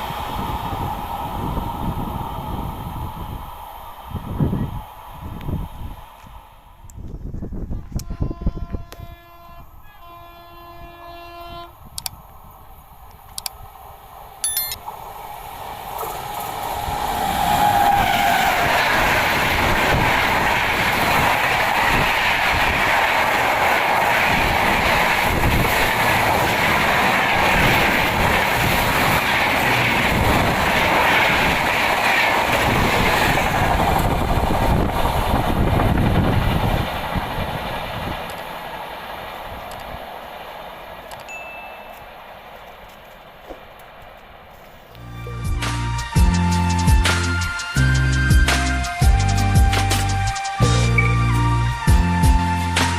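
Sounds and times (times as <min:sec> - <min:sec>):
train rushing past: 0:00.0 - 0:06.9, 0:11.7 - 0:52.9
train horn: 0:07.7 - 0:11.9.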